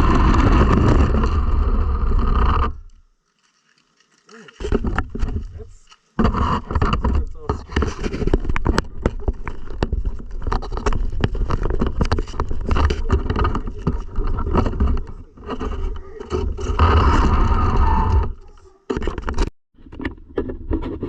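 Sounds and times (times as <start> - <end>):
radio-controlled car driving: 15.6 - 19.0.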